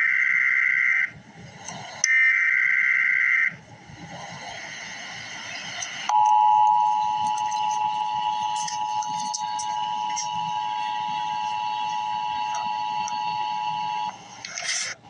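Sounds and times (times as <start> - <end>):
radio hiss with crackles: 0.0 - 15.0
two-tone attention signal: 6.1 - 14.1.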